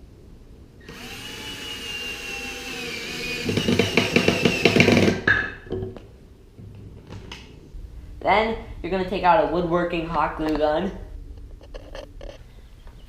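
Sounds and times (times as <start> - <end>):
power drill driving screw into wood: 0.8 - 5.2
drill clicking rapidly: 0.9 - 5.2.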